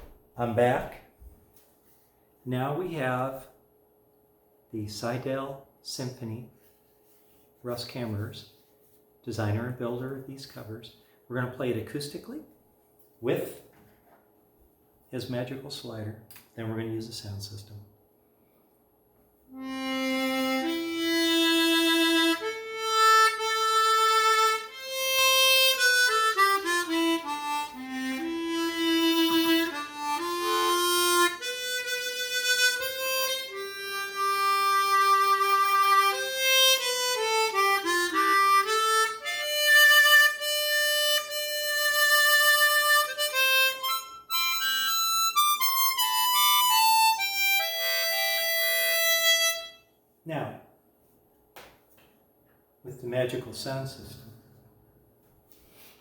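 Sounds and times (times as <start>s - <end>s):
solo harmonica melody: 19.5s - 50.0s.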